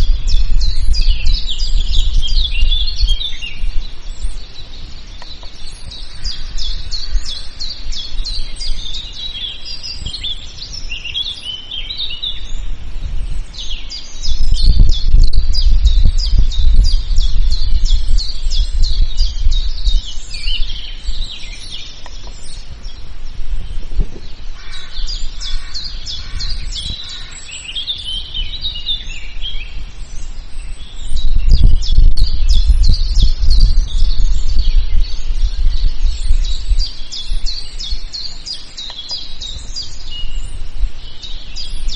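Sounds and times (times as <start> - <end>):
songbirds chirping and singing: 0.0 - 41.9
loud low rumble: 14.4 - 20.1, 31.2 - 37.4.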